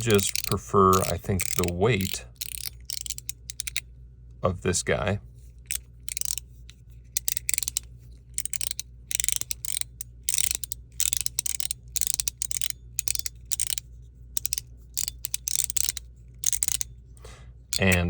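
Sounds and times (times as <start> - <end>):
plastic slider fidget clicking: 0.0 - 3.8, 5.7 - 6.5, 7.1 - 16.9.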